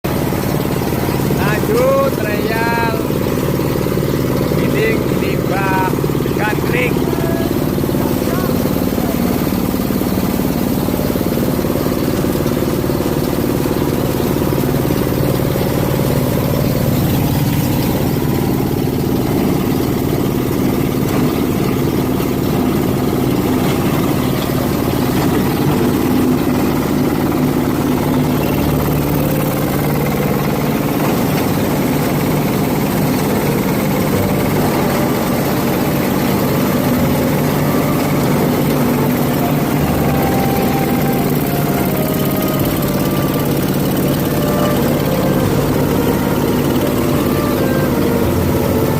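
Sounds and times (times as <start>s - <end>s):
grinding machine running: 0.0s - 48.9s.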